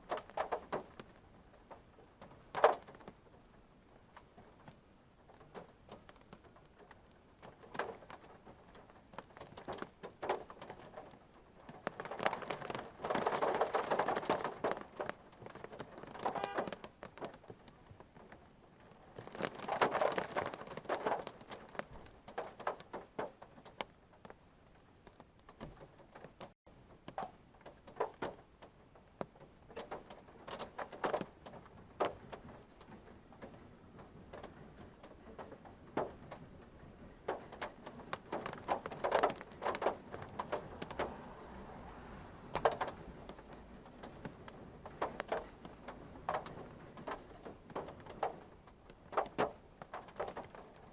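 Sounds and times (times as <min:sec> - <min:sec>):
raindrops tapping on car roof: 0:00.0 - 0:03.4, 0:04.1 - 0:50.9
low hiss: 0:23.0 - 0:50.9.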